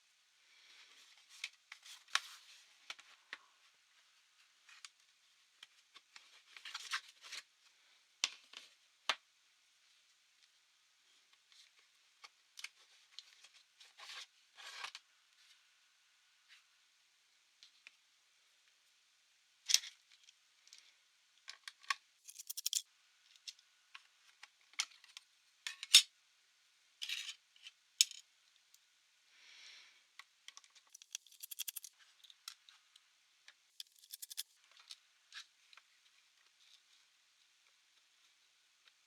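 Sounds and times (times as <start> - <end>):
quick ticking: 31.0 - 31.9, 33.8 - 34.5.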